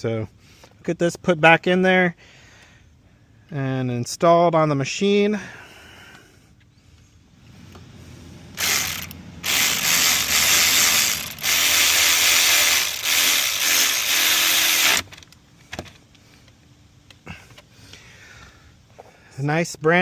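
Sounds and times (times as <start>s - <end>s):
ratchet wrench clicking: 8.6s - 15.3s.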